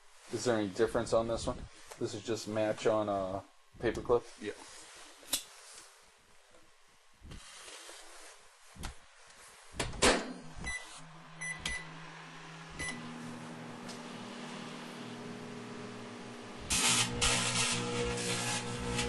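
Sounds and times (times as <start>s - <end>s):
microwave oven humming: 10.2s - 19.0s.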